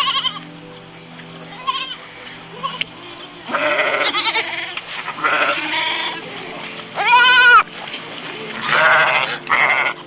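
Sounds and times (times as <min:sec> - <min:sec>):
goat bleating: 0:00.0 - 0:00.5, 0:01.5 - 0:07.7, 0:08.6 - 0:10.0.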